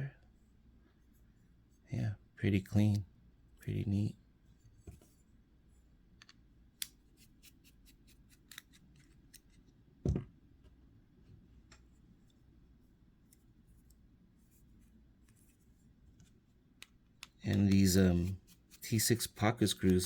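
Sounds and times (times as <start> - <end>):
dull thump: 10.0 - 10.3.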